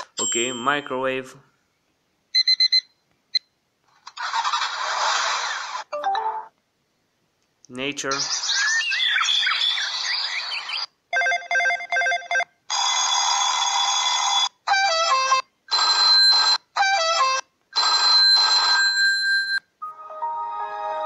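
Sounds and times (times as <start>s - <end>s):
telephone ringing: 11.1s - 14.6s, 17.8s - 19.6s.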